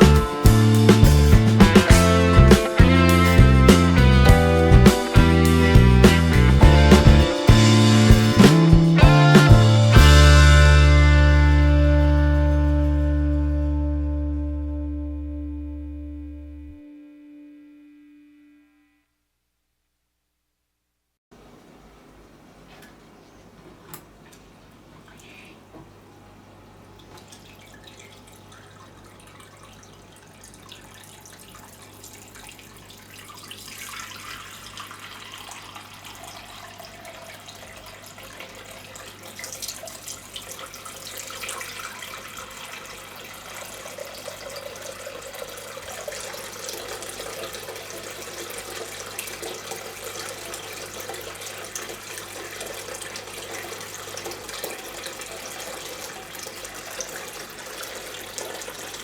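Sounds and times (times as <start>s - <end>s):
water trickling in a fountain: 26.8s - 59.0s.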